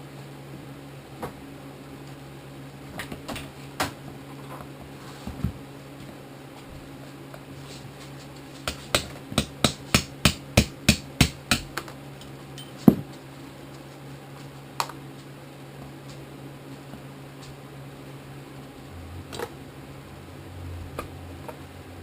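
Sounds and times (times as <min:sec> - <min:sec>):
steady low hum: 0:00.0 - 0:22.0
hammer tapping a punch: 0:08.7 - 0:11.9.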